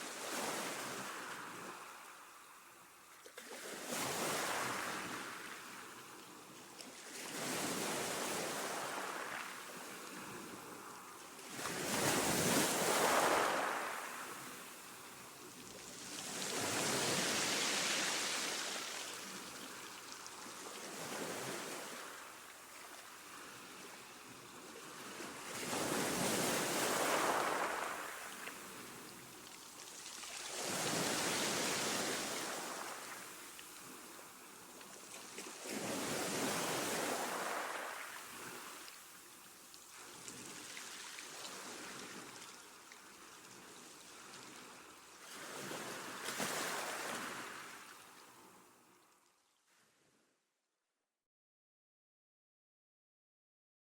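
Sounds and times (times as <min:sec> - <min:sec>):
sea waves crashing on rocks: 0:25.6 - 0:28.4.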